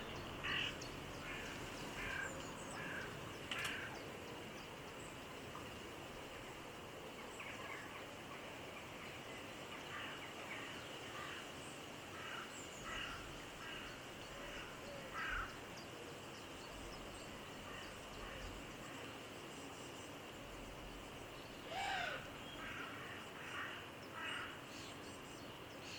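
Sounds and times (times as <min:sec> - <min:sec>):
outdoor background hiss: 0:00.0 - 0:25.9.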